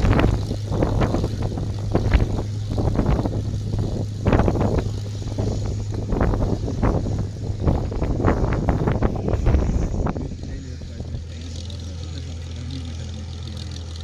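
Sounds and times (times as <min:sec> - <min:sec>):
aero engine droning: 0:00.0 - 0:14.0
irregular buffeting: 0:00.0 - 0:14.0.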